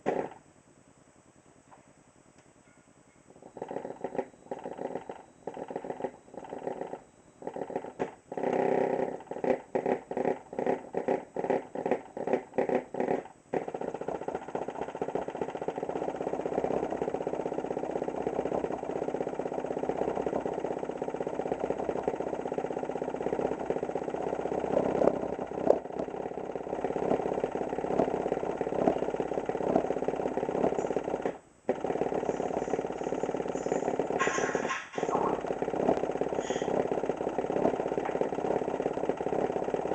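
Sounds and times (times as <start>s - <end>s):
subwoofer pulsing: 9.2s - 39.9s.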